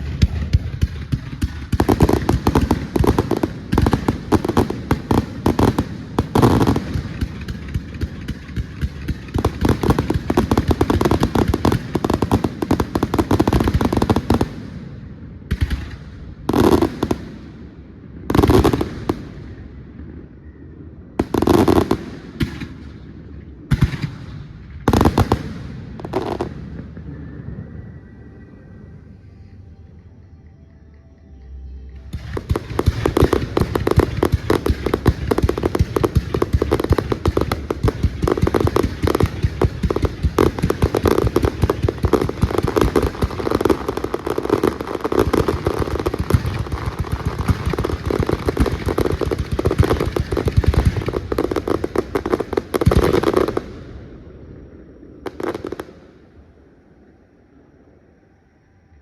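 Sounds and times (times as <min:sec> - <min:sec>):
heavy firework booms: 0:00.0 - 0:17.5
fireworks bangs and crackles: 0:00.0 - 0:28.2, 0:32.1 - 0:56.5.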